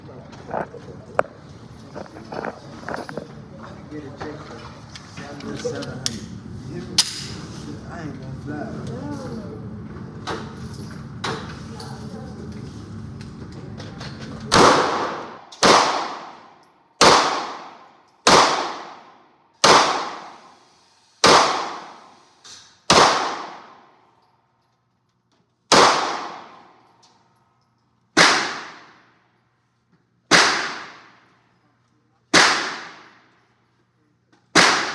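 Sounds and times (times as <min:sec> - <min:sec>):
gunshots with echoing tail: 0:14.5 - 0:16.4, 0:17.0 - 0:20.4, 0:21.2 - 0:22.0, 0:22.9 - 0:23.8, 0:25.7 - 0:26.6, 0:28.2 - 0:29.0, 0:30.3 - 0:31.2, 0:32.4 - 0:33.2, 0:34.6 - 0:34.9.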